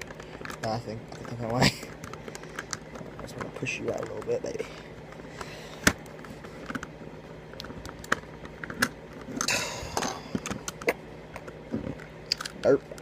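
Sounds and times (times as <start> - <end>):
plastic puzzle pieces clicking: 12.3 - 13.0.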